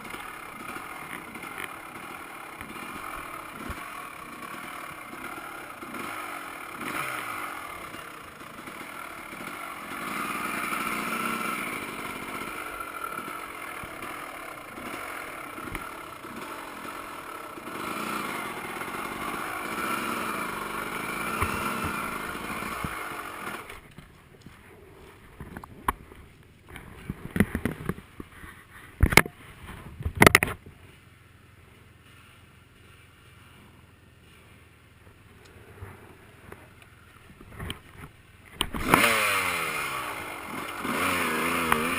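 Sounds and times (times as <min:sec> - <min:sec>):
dirt bike engine revving: 0:00.0 - 0:28.0, 0:37.5 - 0:41.9.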